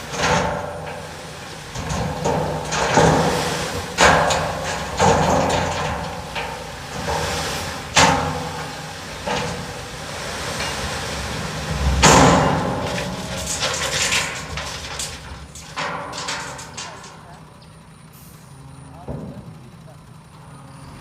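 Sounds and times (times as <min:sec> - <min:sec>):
heavy clanks and thuds: 0:00.0 - 0:17.6
small knocks and rattles: 0:00.0 - 0:17.8
diesel engine running: 0:00.0 - 0:21.0.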